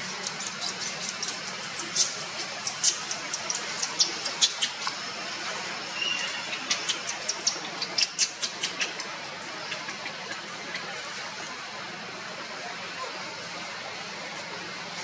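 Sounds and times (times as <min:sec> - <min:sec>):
monkeys squeaking: 0:00.0 - 0:05.1, 0:05.9 - 0:10.9.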